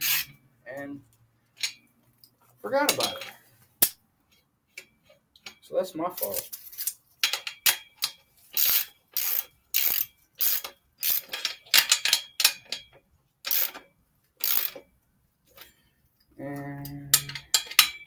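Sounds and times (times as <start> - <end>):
ratchet wrench clicking: 0.0 - 0.3, 6.3 - 12.8, 13.5 - 13.8, 14.4 - 14.8.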